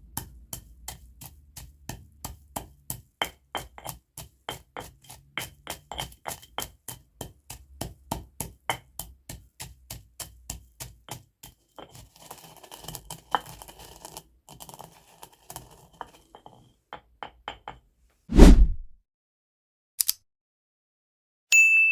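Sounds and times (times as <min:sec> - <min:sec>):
grinding and crackling in mortar: 0:00.8 - 0:16.7
pestle cracking peppercorns: 0:11.8 - 0:16.2
heavy thump: 0:18.3 - 0:18.9.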